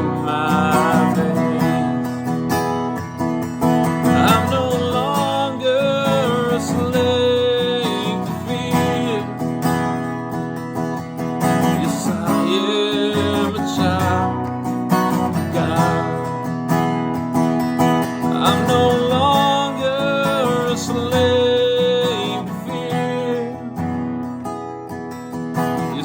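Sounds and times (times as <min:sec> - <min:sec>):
acoustic guitar strumming: 0:00.0 - 0:26.0.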